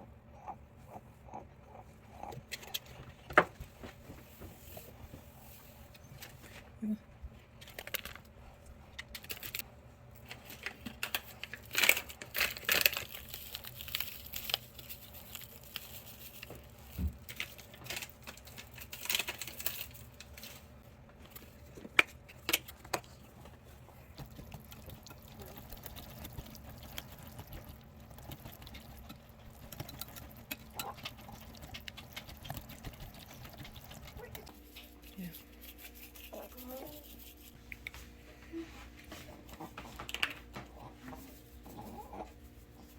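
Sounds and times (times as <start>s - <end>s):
liquid patter: 22.2s - 37.6s.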